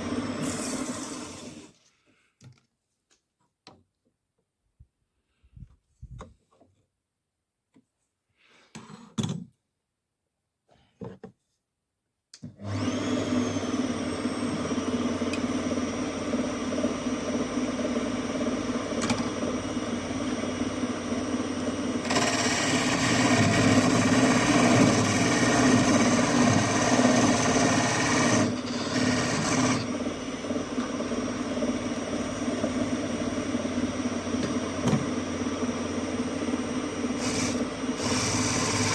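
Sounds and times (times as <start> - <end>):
wood lathe motor humming: 0.0 - 1.7, 12.7 - 38.9
turning tool scraping wood: 22.1 - 29.9, 37.2 - 38.9.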